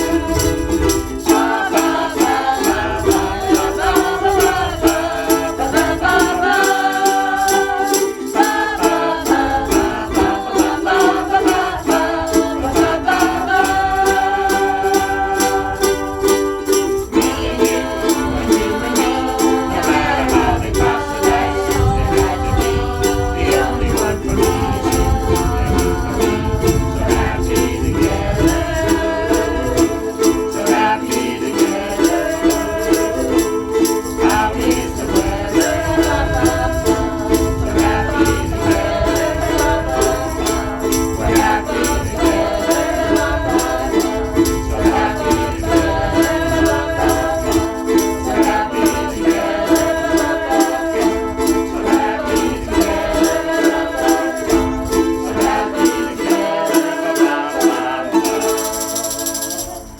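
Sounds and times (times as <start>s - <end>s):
ukuleles strummed: 0.0s - 59.9s
voices singing along: 0.0s - 59.9s.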